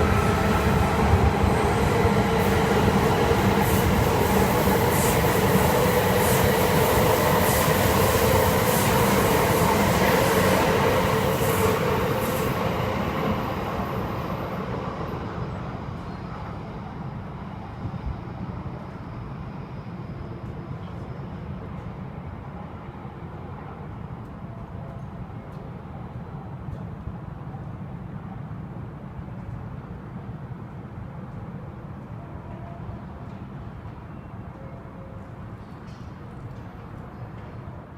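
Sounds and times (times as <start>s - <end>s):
train passing by: 0.0s - 37.9s.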